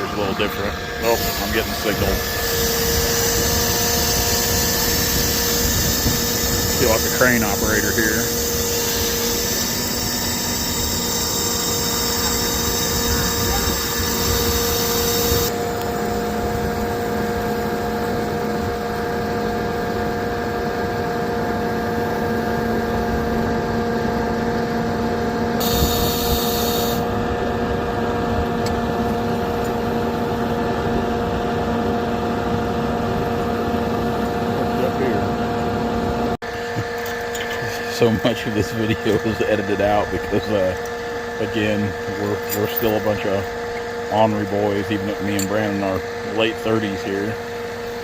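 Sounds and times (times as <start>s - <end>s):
hydraulics whining: 0.0s - 48.0s
hydraulic hiss: 1.0s - 15.5s, 25.6s - 27.1s.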